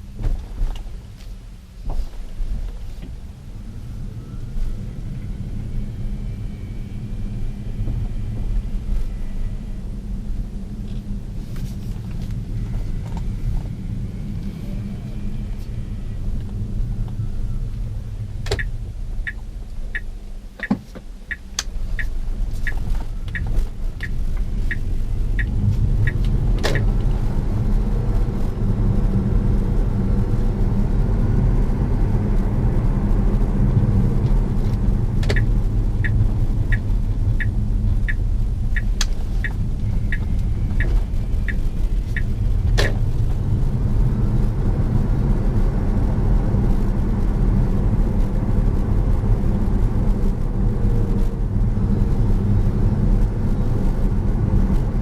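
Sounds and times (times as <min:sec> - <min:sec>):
electric drive unit low rumble: 0:00.0 - 0:55.0
regular ticking: 0:18.5 - 0:26.9, 0:35.2 - 0:43.0.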